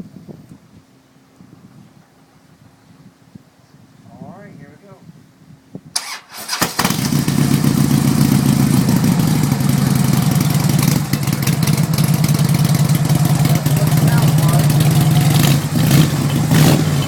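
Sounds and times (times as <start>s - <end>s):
motorcycle engine idling: 6.8s - 17.0s.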